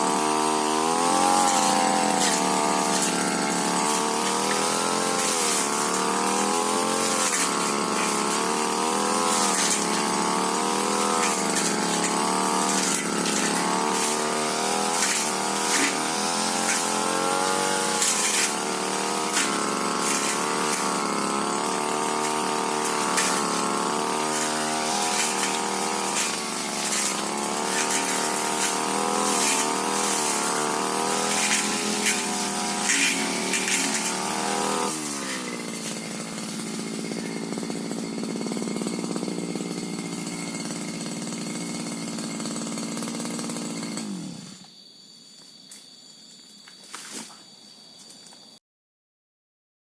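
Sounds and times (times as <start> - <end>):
brush cutter engine running: 0.0 - 44.6.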